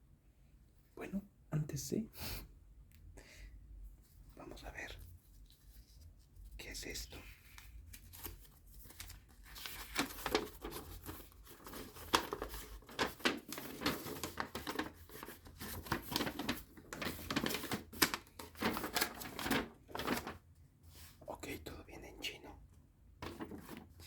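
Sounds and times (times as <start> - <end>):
paper packaging crinkling: 6.8 - 21.1, 23.2 - 24.0.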